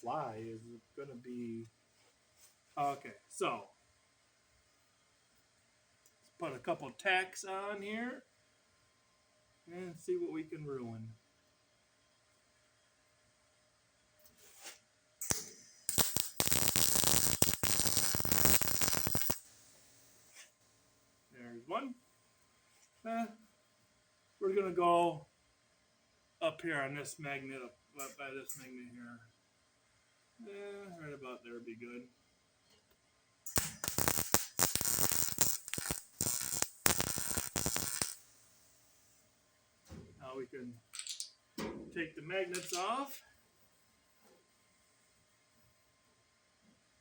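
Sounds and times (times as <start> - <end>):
welding arc crackling: 14.5 - 20.4, 33.5 - 38.8.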